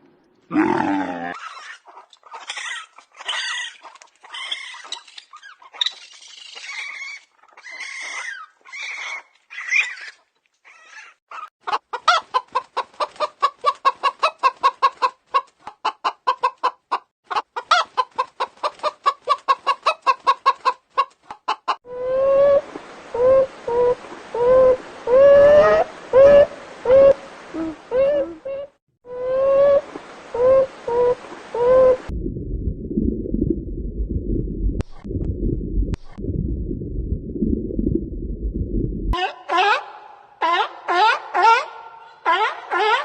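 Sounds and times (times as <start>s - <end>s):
chickens clucking: 11.3s - 21.8s.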